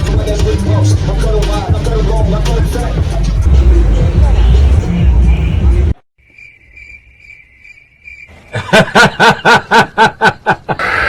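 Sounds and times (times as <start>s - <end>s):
music: 0.0s - 5.9s
cricket chirping trill: 6.2s - 8.3s
loud pitched calls: 10.8s - 11.0s.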